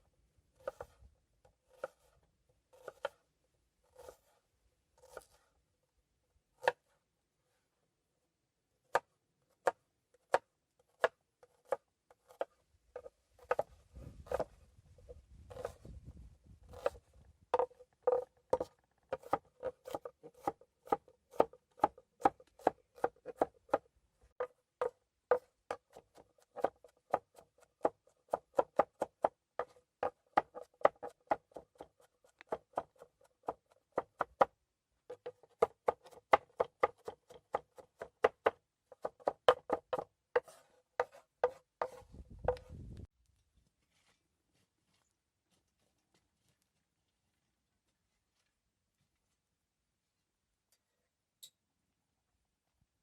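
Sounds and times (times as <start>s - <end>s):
knife chopping on cutting board: 2.8s - 3.2s, 14.2s - 14.5s, 17.6s - 23.8s, 35.2s - 42.6s.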